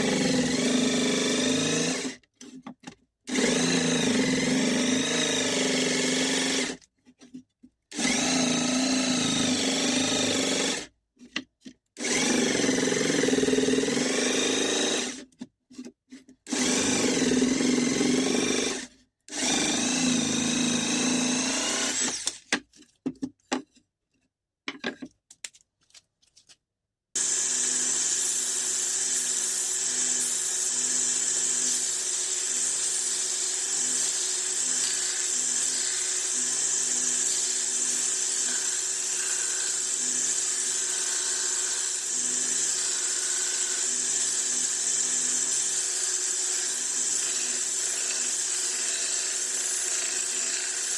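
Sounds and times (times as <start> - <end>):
electric drill bursts: 8.0 - 10.8, 16.5 - 22.4, 27.2 - 50.9.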